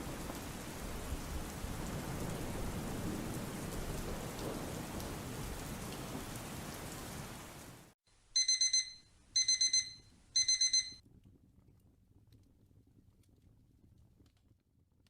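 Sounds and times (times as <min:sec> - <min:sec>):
timer alarm beeps: 0:08.4 - 0:11.0.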